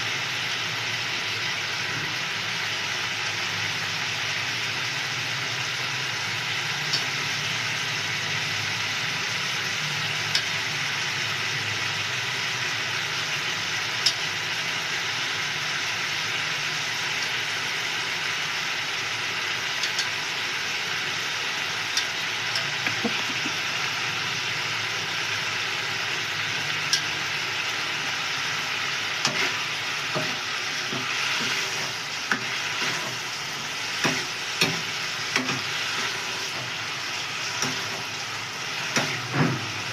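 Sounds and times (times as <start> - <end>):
food sizzling in a pan: 0.0 - 39.9
spatula scraping a pan: 29.1 - 36.8, 37.4 - 39.7.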